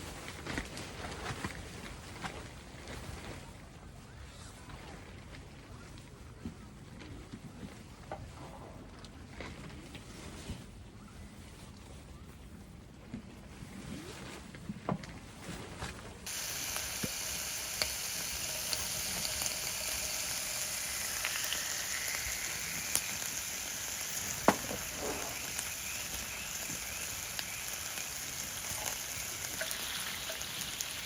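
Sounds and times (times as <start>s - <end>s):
crackling pops: 16.3s - 30.9s
meat sizzling in a pan: 16.3s - 31.0s.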